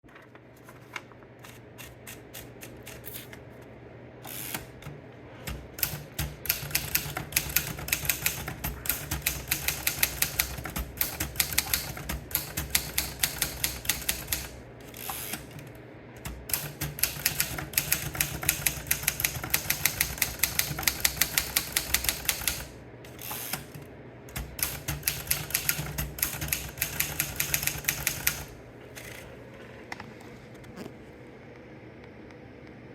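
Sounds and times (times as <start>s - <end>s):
typewriter key clicks: 16.2s - 22.7s.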